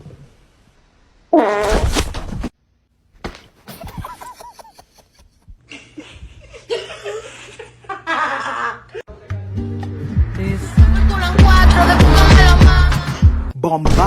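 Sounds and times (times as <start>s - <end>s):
person laughing: 3.7s - 9.0s.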